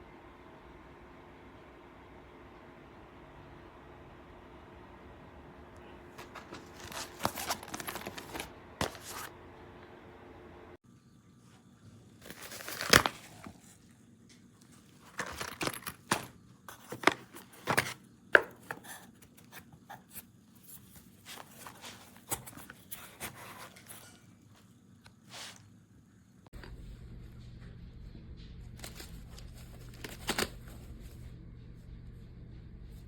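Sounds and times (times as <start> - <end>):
rustling scrapes: 6.1 - 9.3, 18.8 - 24.4.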